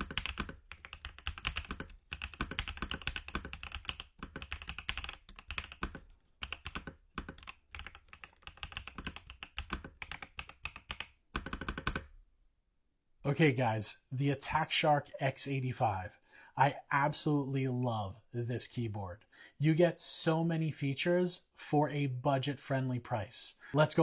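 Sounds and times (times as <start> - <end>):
fast typing on mechanical keyboard: 0.0 - 12.1.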